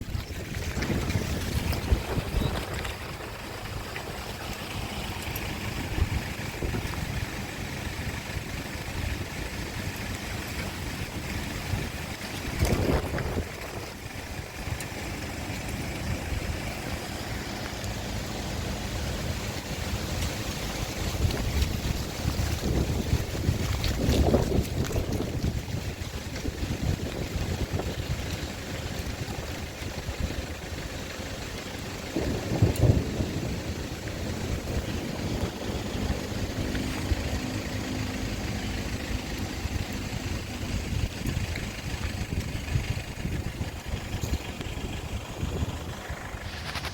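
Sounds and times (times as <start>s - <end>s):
faint engine hum: 0.0s - 46.9s
heavy rain: 0.0s - 46.9s
low rumble: 0.0s - 46.9s
strong wind: 0.0s - 46.9s
wind buffeting microphone: 0.0s - 46.9s.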